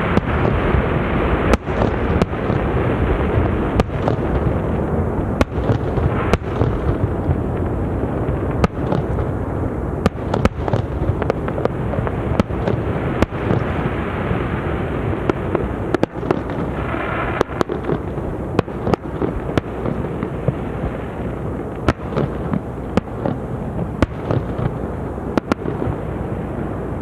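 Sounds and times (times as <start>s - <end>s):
continuous dense din: 0.0s - 27.0s
firework shells bursting: 15.2s - 26.2s.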